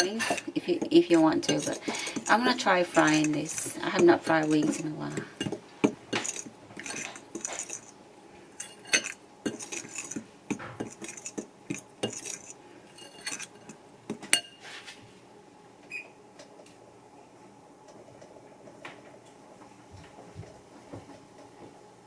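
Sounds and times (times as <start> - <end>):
utensil clinking against bowl: 0.0 - 8.0, 8.6 - 14.6.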